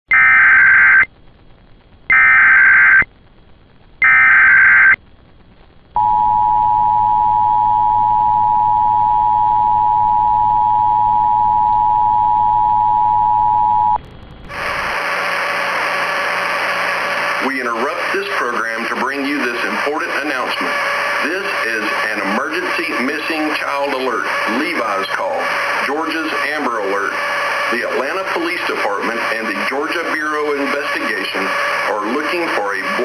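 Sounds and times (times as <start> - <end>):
hissy noise burst: 14.0 - 33.0
screeching digital header bursts: 14.5 - 33.0.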